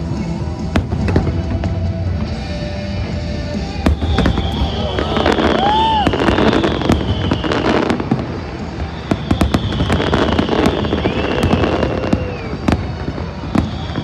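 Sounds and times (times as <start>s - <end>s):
fireworks bursting and crackling: 0.4s - 14.0s
firework whistle: 3.2s - 14.0s.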